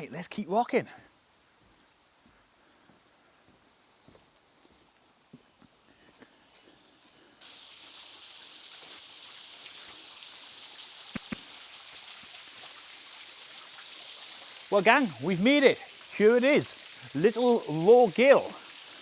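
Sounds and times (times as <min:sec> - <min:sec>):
waterfall rushing: 0:11.1 - 0:11.5, 0:14.7 - 0:19.0.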